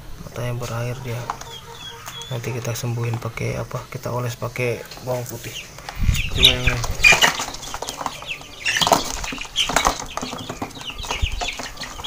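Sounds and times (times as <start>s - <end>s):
chickens clucking: 0.0s - 12.0s
wings flapping and rustling: 5.3s - 12.0s.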